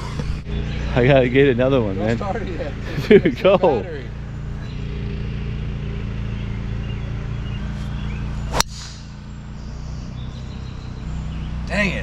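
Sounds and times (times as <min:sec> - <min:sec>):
steady low hum: 0:00.0 - 0:12.0
golf club striking ball: 0:08.0 - 0:09.4.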